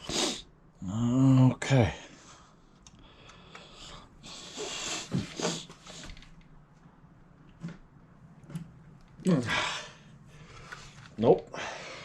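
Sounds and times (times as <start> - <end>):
effortful breathing: 2.0 - 6.4, 9.3 - 12.0.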